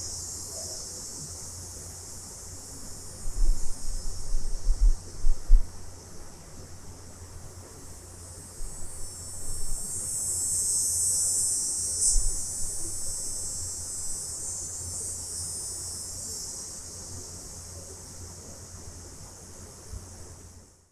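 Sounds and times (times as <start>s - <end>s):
cicadas buzzing: 0.0s - 20.8s
faint low bumps: 3.2s - 5.8s.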